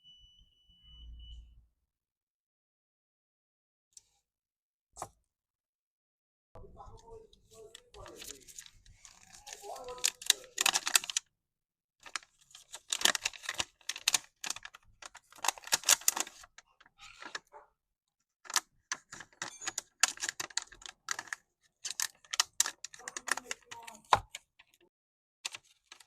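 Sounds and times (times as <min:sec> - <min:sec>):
small hard parts clicking and rattling: 0:08.0 - 0:11.2, 0:18.5 - 0:24.4.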